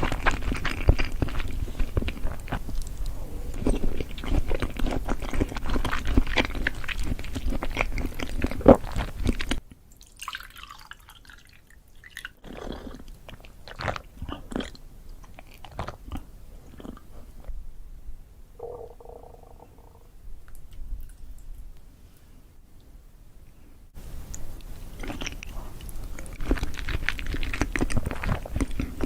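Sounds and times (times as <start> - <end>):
chewing and crunching food: 0.0 - 17.5, 24.3 - 29.0
wet mouth sounds: 18.6 - 21.4.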